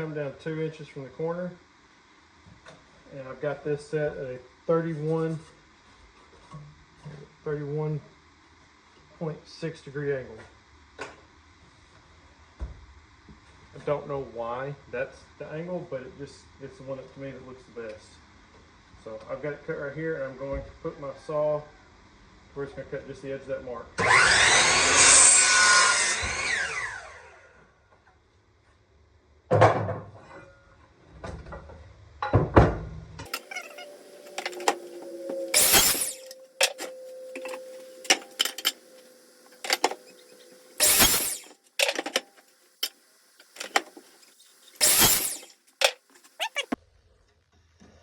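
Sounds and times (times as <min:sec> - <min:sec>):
power saw cutting wood: 0:24.0 - 0:27.4, 0:33.3 - 0:41.6, 0:44.7 - 0:46.8.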